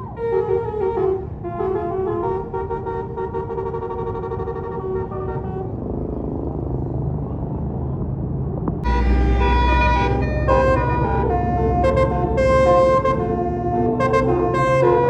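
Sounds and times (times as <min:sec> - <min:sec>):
bus horn playing a tune: 0:00.0 - 0:05.8, 0:08.8 - 0:15.0
loud horn blast: 0:00.0 - 0:05.8, 0:08.8 - 0:15.0
bus engine and road rumble: 0:00.0 - 0:15.0.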